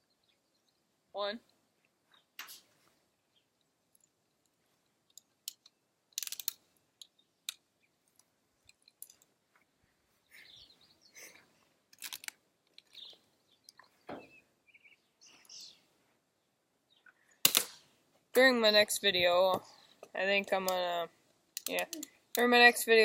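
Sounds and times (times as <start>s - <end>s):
bb gun clicks: 5.1s - 7.6s, 17.4s - 17.8s, 21.6s - 22.4s.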